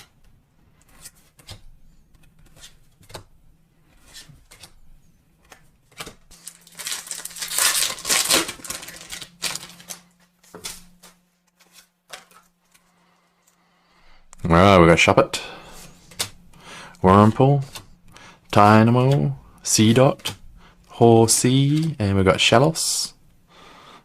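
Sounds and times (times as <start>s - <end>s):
cards clicking and rustling: 5.4s - 12.8s, 16.0s - 16.4s, 21.6s - 22.0s
foil pack tearing and crinkling: 6.3s - 10.8s.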